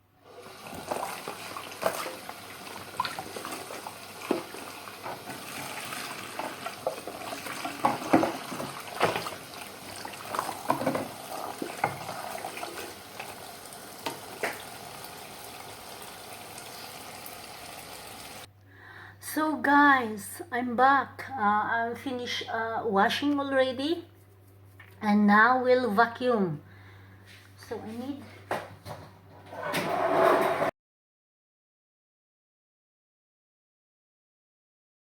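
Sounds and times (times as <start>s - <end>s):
tap water running: 0.3s - 18.5s
dishes clattering: 4.3s - 12.9s.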